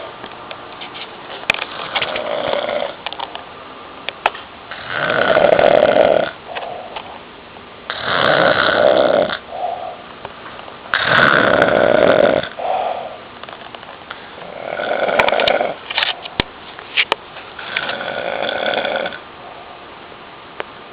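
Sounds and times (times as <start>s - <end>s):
man snoring loudly: 2.1s - 3.0s, 4.7s - 6.4s, 7.9s - 9.4s, 10.9s - 13.0s, 14.4s - 15.8s, 17.6s - 19.2s
soft breath: 12.6s - 13.2s.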